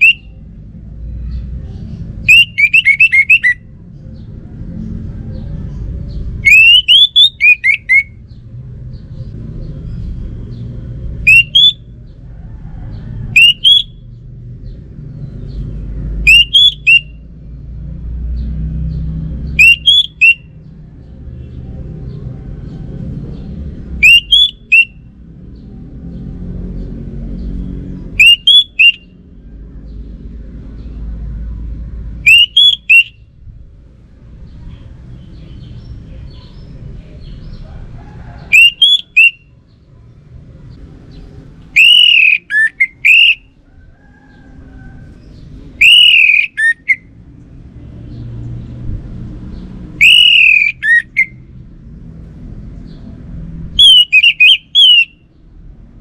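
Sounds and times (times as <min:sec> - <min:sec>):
bird singing whistled phrases: 0:00.0 - 0:00.3, 0:02.3 - 0:03.6, 0:06.4 - 0:08.2, 0:11.3 - 0:11.8, 0:13.4 - 0:14.0, 0:16.3 - 0:17.2, 0:19.6 - 0:20.5, 0:24.0 - 0:25.0, 0:28.2 - 0:29.1, 0:32.2 - 0:33.2, 0:38.5 - 0:39.5, 0:41.8 - 0:43.5, 0:45.8 - 0:47.1, 0:50.0 - 0:51.4, 0:53.8 - 0:55.2.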